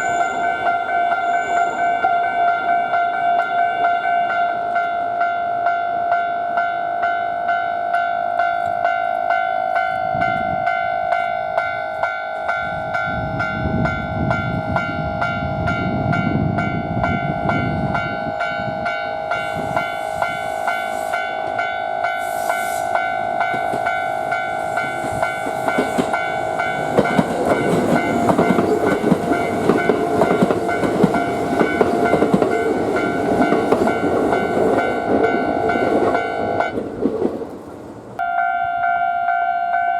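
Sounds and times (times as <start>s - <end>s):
level crossing alarm ringing: 0.0s - 36.8s, 38.2s - 39.9s
train rumbling past: 0.0s - 39.9s
train wheels clattering: 19.3s - 37.7s.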